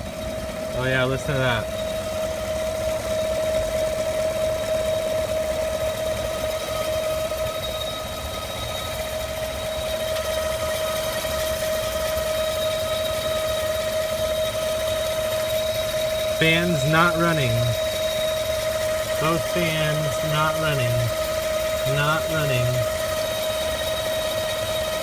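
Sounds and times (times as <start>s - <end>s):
loud steady whine: 0.3s - 2.1s, 16.0s - 23.1s.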